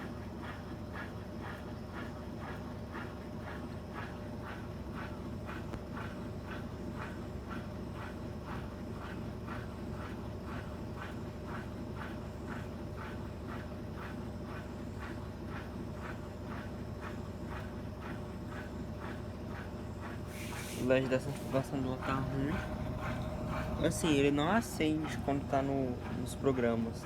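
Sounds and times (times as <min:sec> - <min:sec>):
washing machine motor hum: 0:00.0 - 0:27.0
washing machine swishing: 0:09.7 - 0:27.0.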